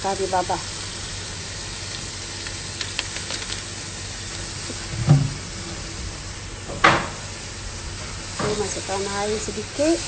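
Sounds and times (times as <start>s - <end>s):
spices sizzling in hot oil: 0.0s - 10.0s
low knock: 5.0s - 5.5s.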